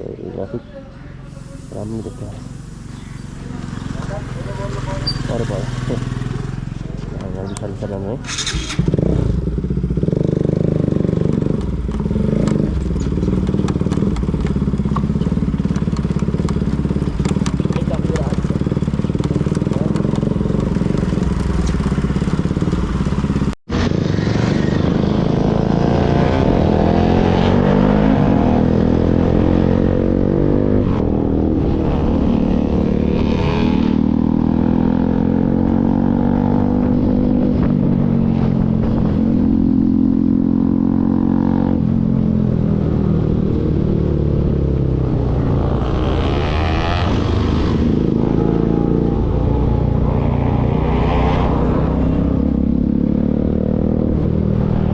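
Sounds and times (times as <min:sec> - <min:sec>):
motorcycle engine revving: 0:00.0 - 0:54.9.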